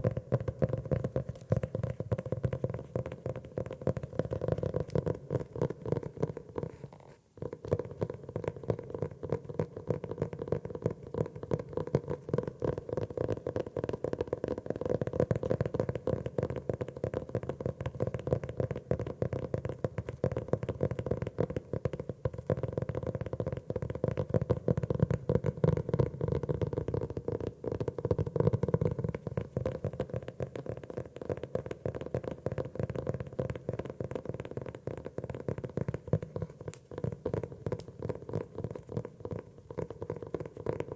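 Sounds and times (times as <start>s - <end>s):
fingers tapping on notebook: 0.0s - 40.9s.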